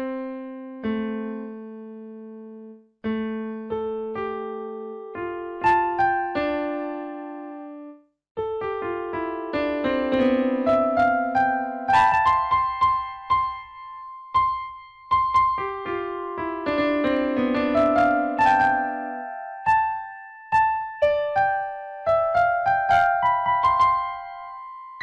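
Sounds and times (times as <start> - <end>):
piano melody: 0.0 - 25.0.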